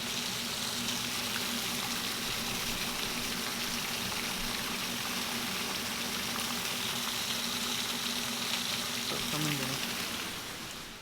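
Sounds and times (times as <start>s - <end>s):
heavy rain hissing: 9.1s - 10.7s.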